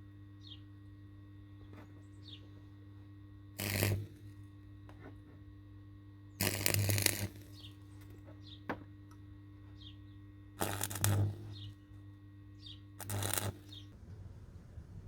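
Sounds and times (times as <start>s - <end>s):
electrical hum: 0.0s - 15.0s
arc welder crackling: 3.4s - 5.3s, 6.3s - 9.4s, 10.5s - 12.1s, 12.7s - 14.1s.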